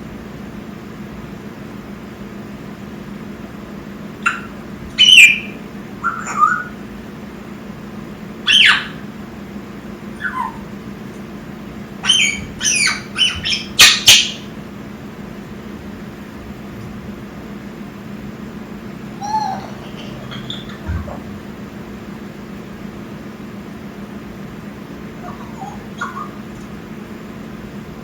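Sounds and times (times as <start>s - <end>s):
parrot squawking and chirping: 4.2s - 6.8s, 8.5s - 9.1s, 10.1s - 10.8s, 12.0s - 14.5s, 19.1s - 21.3s, 25.2s - 26.8s.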